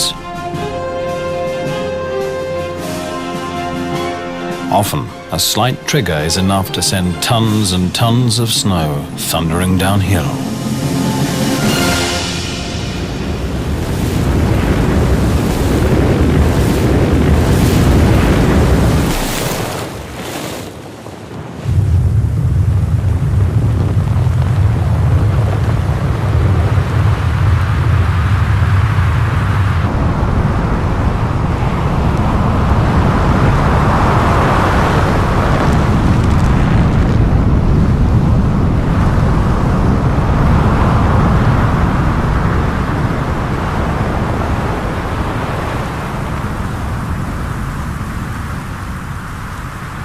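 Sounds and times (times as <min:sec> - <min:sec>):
avalanche rumble of moving snow: 0:00.0 - 0:50.0.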